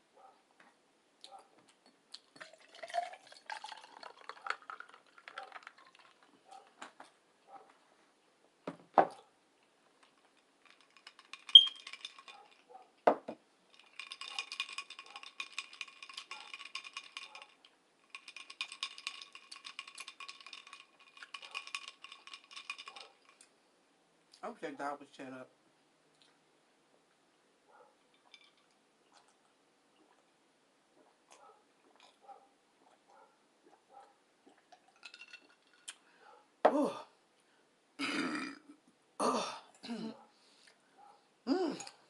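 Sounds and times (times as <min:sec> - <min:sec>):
utensil clinking on dish: 0:10.6 - 0:12.6.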